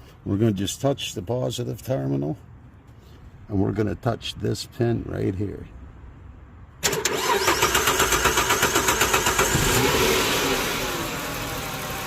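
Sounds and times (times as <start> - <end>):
car engine cranking: 6.8 - 12.0
car engine idling: 6.8 - 12.0.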